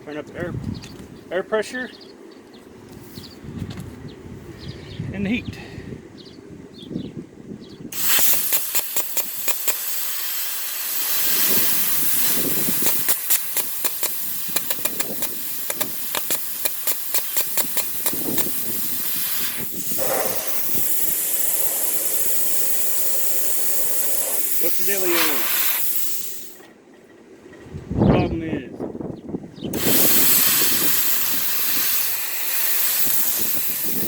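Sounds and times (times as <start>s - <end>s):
compressed air rushing: 7.9s - 26.6s, 29.7s - 34.0s
plasma arc crackling clicks: 8.0s - 26.7s, 29.8s - 34.0s.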